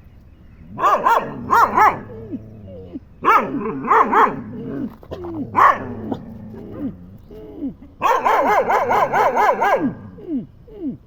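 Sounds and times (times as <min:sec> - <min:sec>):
dog barking: 0:00.8 - 0:02.2, 0:03.2 - 0:06.8, 0:08.0 - 0:10.1
dog whining yelps: 0:00.8 - 0:02.4, 0:08.0 - 0:09.9.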